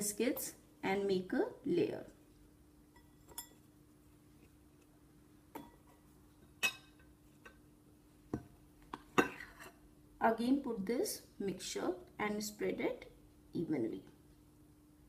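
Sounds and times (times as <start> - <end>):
faint steady hum: 0.0 - 15.0
biscuits clinking on a plate: 6.6 - 7.6.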